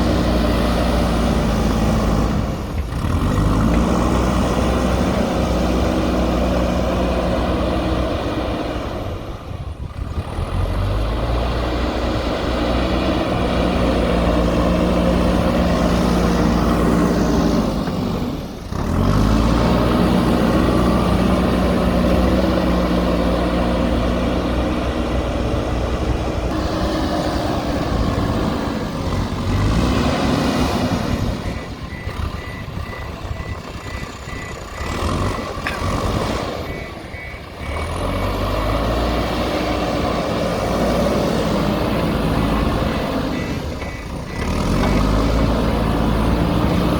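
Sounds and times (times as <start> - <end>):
diesel engine running under load: 0.0 - 46.9
reversing alarm beeping: 28.2 - 38.8, 42.4 - 46.7.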